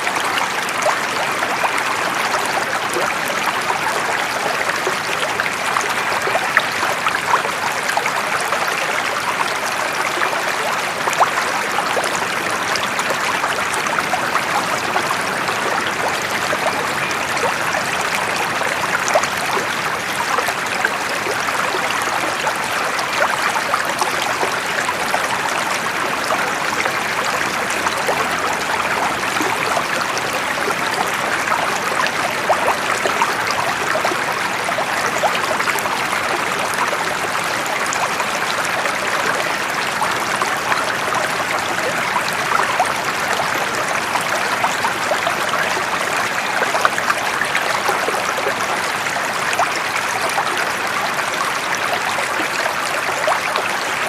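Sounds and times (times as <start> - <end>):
flowing water with splashes: 0.0 - 54.0.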